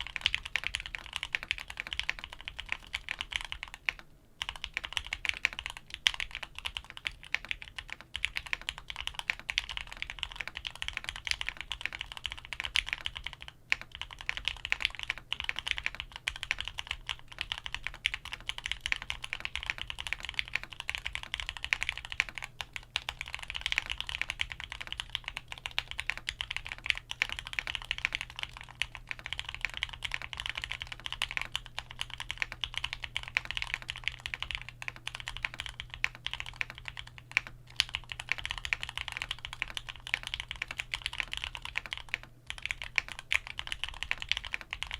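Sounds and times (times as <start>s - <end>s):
mechanical keyboard typing: 0.0s - 44.9s.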